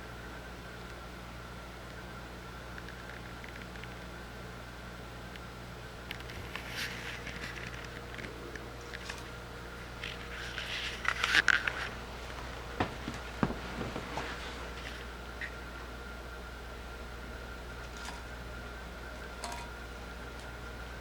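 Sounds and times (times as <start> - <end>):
steady low hum: 0.0 - 21.0
rabbit crunching vegetables: 6.1 - 16.0, 17.6 - 21.0.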